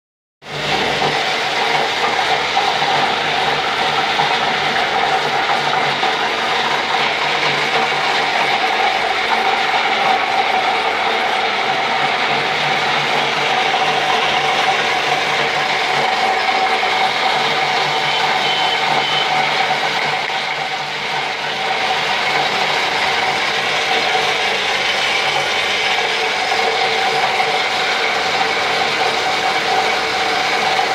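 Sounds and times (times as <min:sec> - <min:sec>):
waste grinder grinding and whining: 0:00.4 - 0:30.9.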